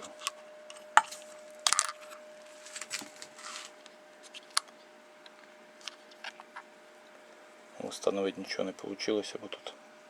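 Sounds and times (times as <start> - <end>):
faint steady hum: 0.0 - 10.0
scraping rustle: 2.4 - 4.5.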